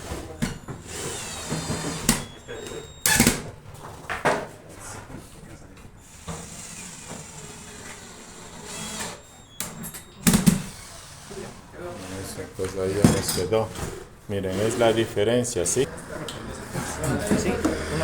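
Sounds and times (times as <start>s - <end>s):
cordless drill whining: 0.0s - 3.5s, 6.0s - 13.1s.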